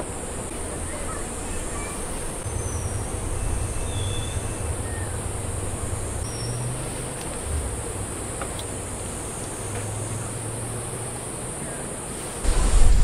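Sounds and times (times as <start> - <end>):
high-pitched insect chorus: 0.0 - 12.9
faint chirps: 0.5 - 7.0
low rumble: 2.4 - 6.5, 12.5 - 13.0.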